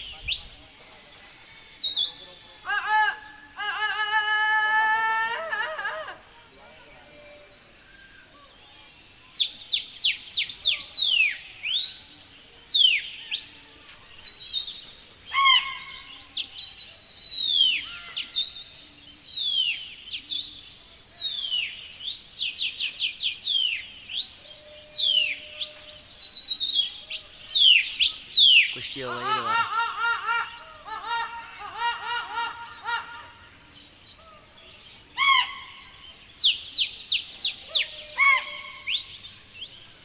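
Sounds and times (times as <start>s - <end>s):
shrill human whistling: 0.3s - 2.2s, 9.3s - 14.8s, 16.4s - 22.9s, 23.5s - 28.8s, 36.0s - 40.0s.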